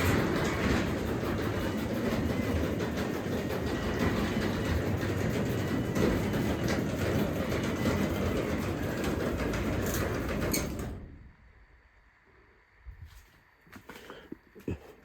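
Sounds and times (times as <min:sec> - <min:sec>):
garage door rumbling and rattling: 0:00.0 - 0:11.5.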